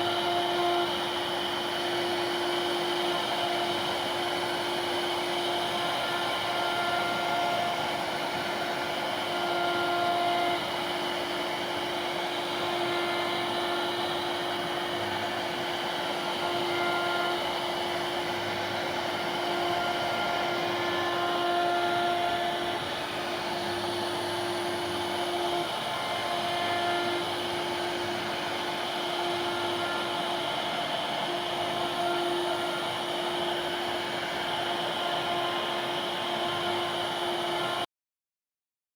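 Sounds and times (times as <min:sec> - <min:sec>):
router spindle hum and hiss: 0:00.0 - 0:37.9.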